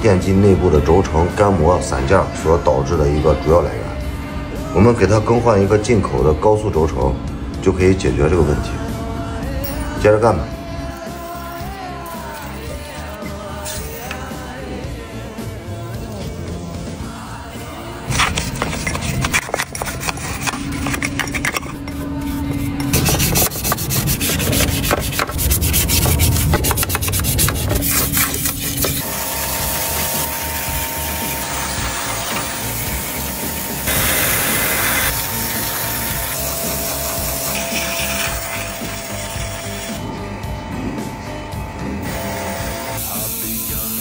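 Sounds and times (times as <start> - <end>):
hand rubbing and scraping: 18.0 - 29.0
steady rasping noise: 18.0 - 43.6.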